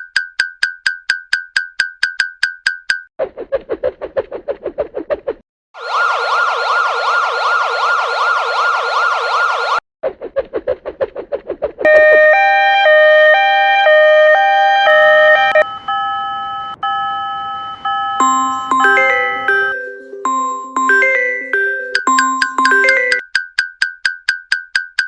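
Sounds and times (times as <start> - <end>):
fast-warbling siren: 5.8 - 9.8, 11.9 - 20.2
two-note electronic chime: 16.9 - 23.2.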